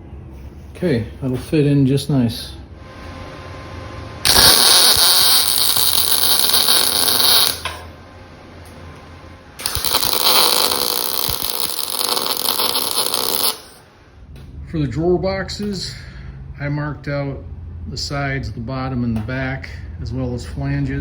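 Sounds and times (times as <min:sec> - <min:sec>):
loud hissing noise: 0:04.2 - 0:07.8, 0:09.6 - 0:13.9.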